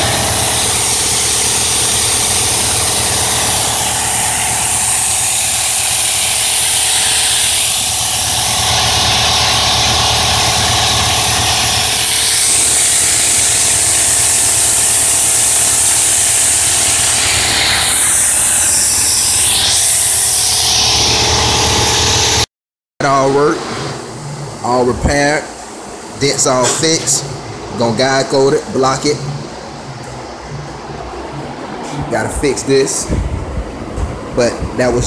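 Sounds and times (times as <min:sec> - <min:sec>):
power tool running with loud hiss: 0:00.0 - 0:22.5
low buzzing hum: 0:00.0 - 0:35.0.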